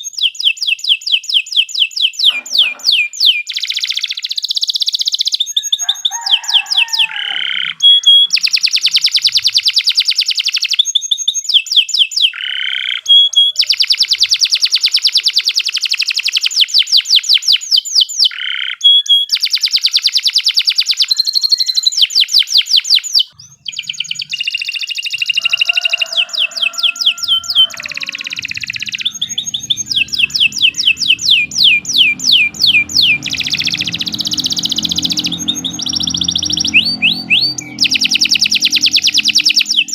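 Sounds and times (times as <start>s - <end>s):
canary singing: 0.0s - 39.9s
low steady hum: 27.3s - 39.8s.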